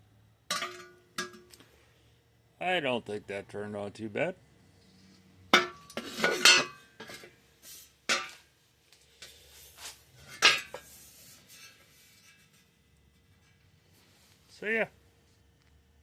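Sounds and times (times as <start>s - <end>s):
metal objects clanking: 0.5s - 1.5s, 5.6s - 7.3s.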